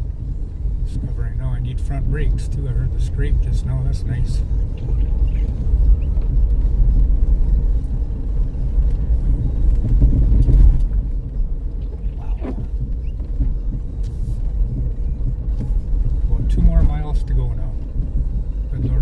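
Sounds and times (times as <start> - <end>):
minivan rumble inside cabin: 0.0 - 19.0.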